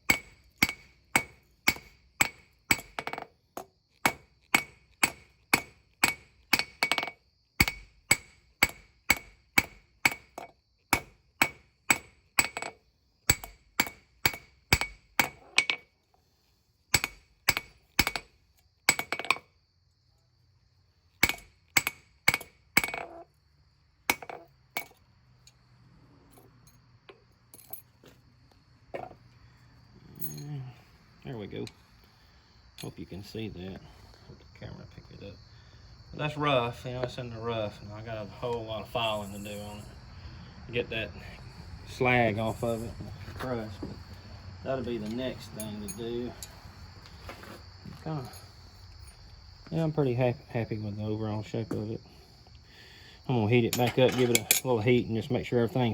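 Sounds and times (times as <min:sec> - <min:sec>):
hammer striking steel on anvil: 0:00.1 - 0:03.2, 0:04.1 - 0:10.3, 0:11.0 - 0:12.7, 0:13.3 - 0:15.8, 0:16.9 - 0:18.3, 0:21.2 - 0:23.1.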